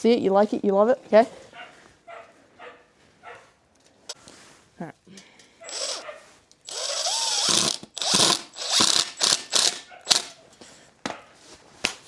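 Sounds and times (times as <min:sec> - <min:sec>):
power drill driving screws into wood: 0:05.7 - 0:06.0, 0:06.7 - 0:10.4.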